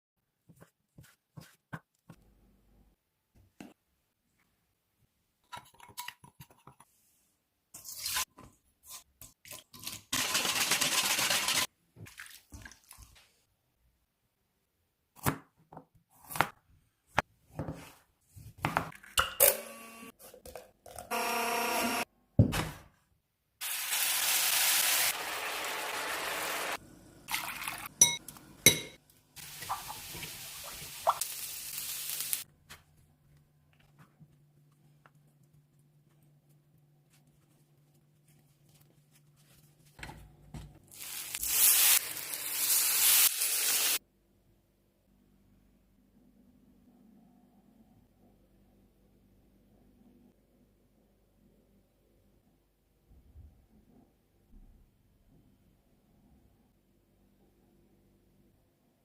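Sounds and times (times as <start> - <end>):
dishes and utensils clinking: 28.0 - 29.0.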